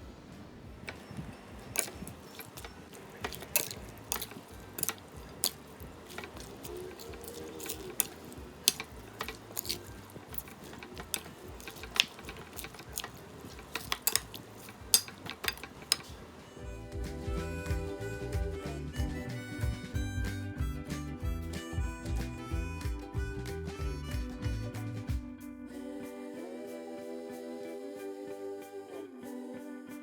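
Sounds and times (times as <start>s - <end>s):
utensils clinking against dish: 0.8s - 16.4s.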